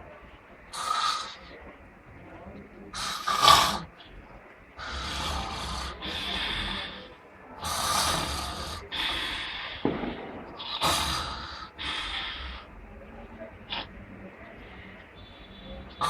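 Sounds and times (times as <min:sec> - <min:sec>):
man snoring: 0:00.8 - 0:01.4, 0:03.0 - 0:03.9, 0:04.8 - 0:06.9, 0:07.6 - 0:09.5, 0:10.8 - 0:12.6.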